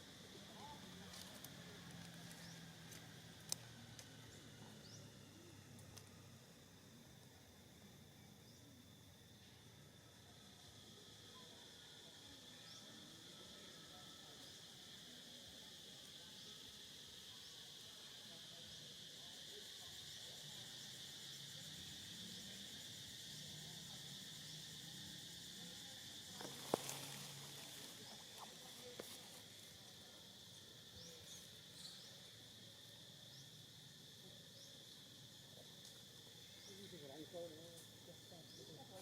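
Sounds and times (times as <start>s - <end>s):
insect chorus drone: 0.0s - 39.0s
faint ticks: 1.1s - 4.4s.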